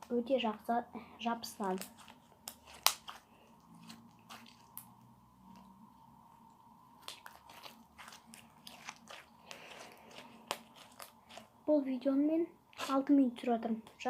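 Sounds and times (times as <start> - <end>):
sticky slime clicking and crackling: 1.4 - 5.0, 7.0 - 11.6.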